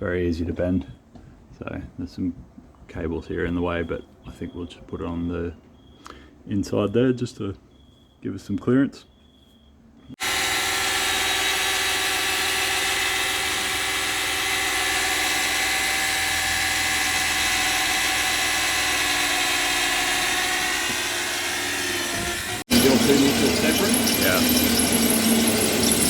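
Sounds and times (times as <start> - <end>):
power drill boring: 10.2 - 26.0.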